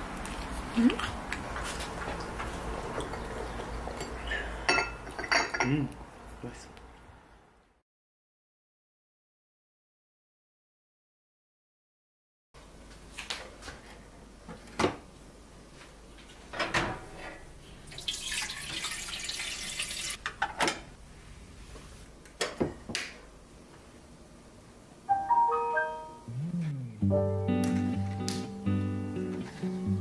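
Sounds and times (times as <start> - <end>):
dishware clinking and knocking: 4.0 - 5.8
running water: 17.8 - 20.2
soft music with plucked notes: 25.1 - 30.0.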